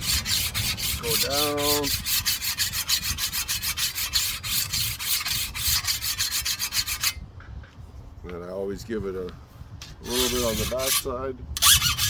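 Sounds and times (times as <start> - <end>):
hand file rasping on blade: 0.0 - 7.2, 10.0 - 12.0.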